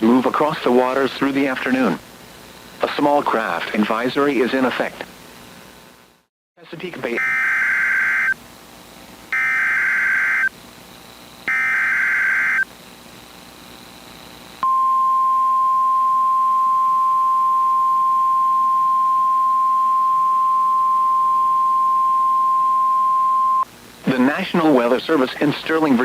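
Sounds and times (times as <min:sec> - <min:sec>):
steady warning alarm tone: 0:07.2 - 0:08.4, 0:09.3 - 0:10.5, 0:11.5 - 0:12.7, 0:14.6 - 0:23.6
warbling data tones: 0:09.3 - 0:10.5, 0:11.5 - 0:12.6.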